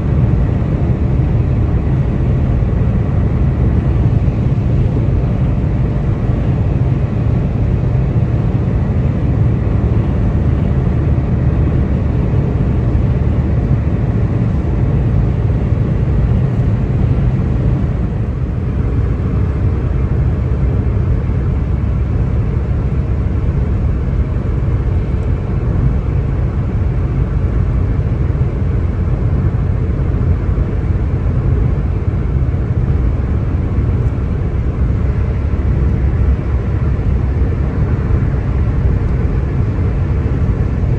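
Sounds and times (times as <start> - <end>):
engine and tyres rumbling: 0.0 - 40.9.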